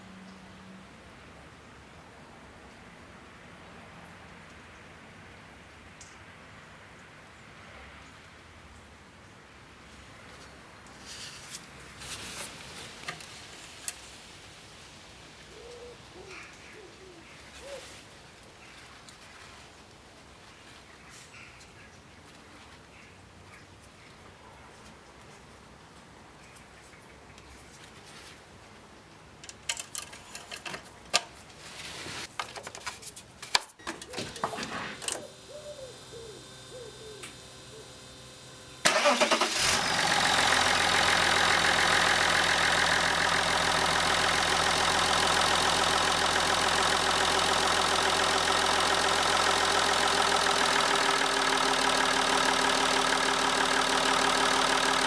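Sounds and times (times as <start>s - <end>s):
diesel engine cranking and idling: 34.4s - 55.0s.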